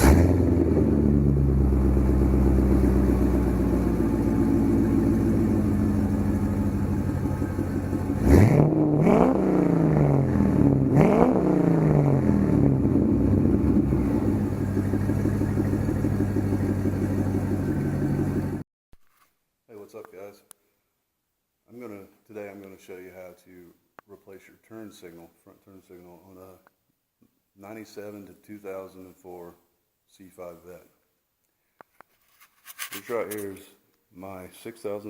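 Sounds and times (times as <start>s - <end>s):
car engine idling and revving: 0.0s - 18.6s.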